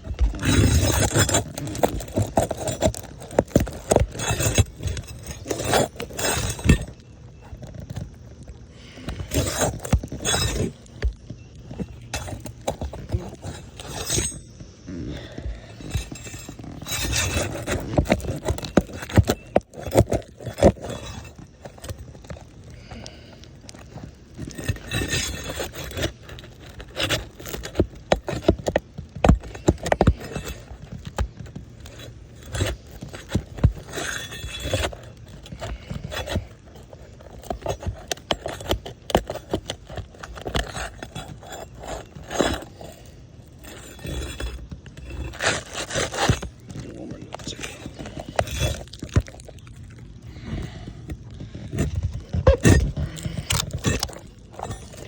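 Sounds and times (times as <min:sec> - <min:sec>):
tool scraping roof shingles: 0:00.0 - 0:55.0.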